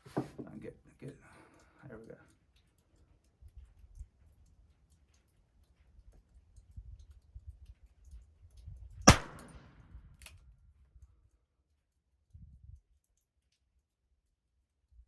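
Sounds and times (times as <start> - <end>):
revolver gunshot: 9.1 - 9.9.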